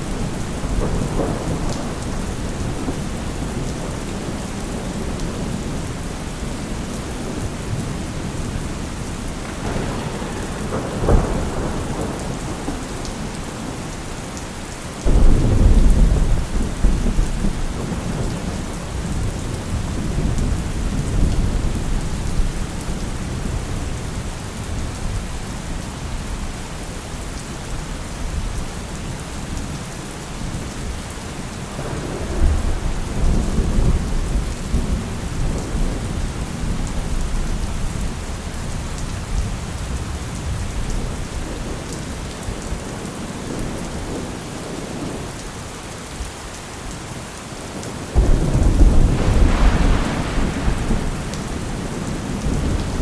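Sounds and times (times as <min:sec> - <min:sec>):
loud thunderclap: 0:00.0 - 0:05.8, 0:09.3 - 0:13.8, 0:15.0 - 0:22.5, 0:31.7 - 0:37.9, 0:48.2 - 0:53.0
thunder rumbling: 0:00.0 - 0:14.4, 0:15.0 - 0:24.0, 0:31.6 - 0:41.9, 0:48.1 - 0:53.0
steady rain hissing: 0:00.0 - 0:53.0.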